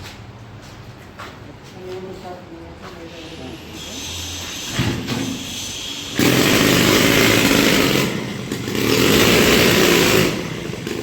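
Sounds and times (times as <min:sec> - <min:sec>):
small two-stroke engine running: 0:06.1 - 0:11.0.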